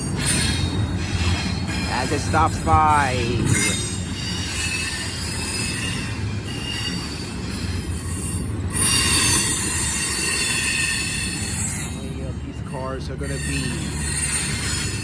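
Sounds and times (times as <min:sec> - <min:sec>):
train wheels rumbling on rail: 0:00.0 - 0:15.0.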